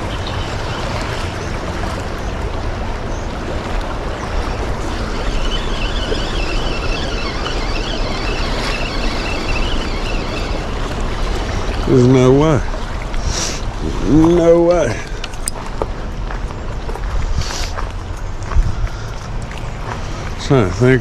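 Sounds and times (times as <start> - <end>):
moving water: 0.0 - 21.0
wind buffeting microphone: 0.0 - 21.0
faint wavering high whistle: 4.5 - 11.6.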